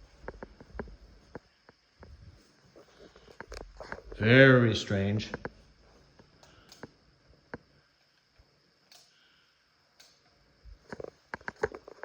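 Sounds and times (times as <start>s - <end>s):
faint irregular clicks: 2.8s - 4.1s, 5.3s - 12.0s.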